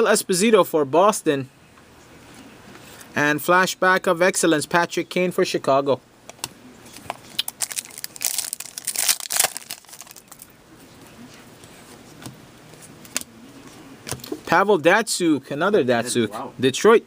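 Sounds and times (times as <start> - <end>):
foil wrapper crinkling and tearing: 7.0 - 10.5.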